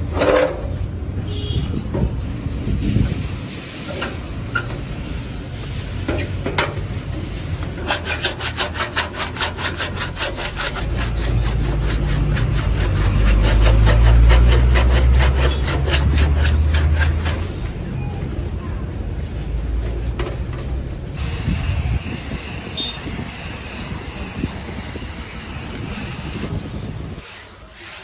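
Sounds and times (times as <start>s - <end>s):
fast scraping strokes: 7.8s - 17.7s, 21.2s - 28.0s.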